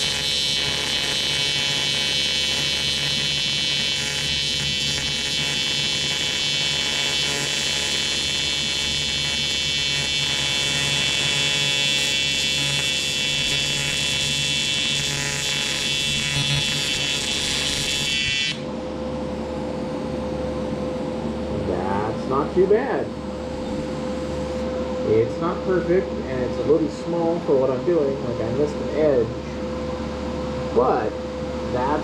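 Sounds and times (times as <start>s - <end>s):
welding arc buzzing: 0.0s - 19.5s
steady low hum: 0.0s - 32.0s.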